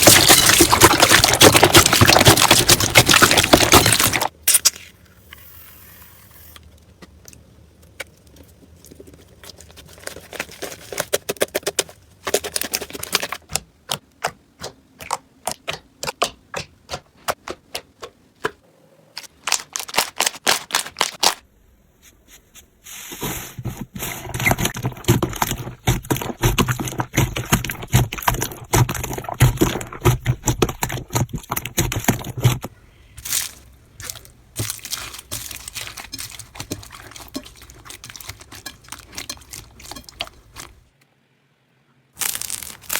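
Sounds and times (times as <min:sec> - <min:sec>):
slime crackling and popping: 0:33.2 - 0:40.8, 0:42.2 - 0:42.9.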